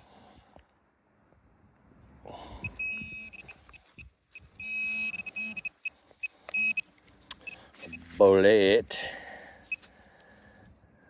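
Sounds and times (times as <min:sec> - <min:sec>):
metal detector beeps: 0:02.6 - 0:08.2, 0:09.7 - 0:09.9
metal detector steady tone: 0:02.6 - 0:08.7, 0:09.6 - 0:09.9.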